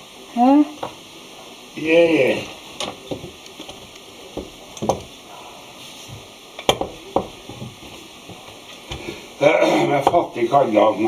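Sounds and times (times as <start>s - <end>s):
dough frying in hot fat: 0.0s - 11.0s
utensils knocking at pot: 2.8s - 5.2s, 6.6s - 9.2s, 9.9s - 10.4s.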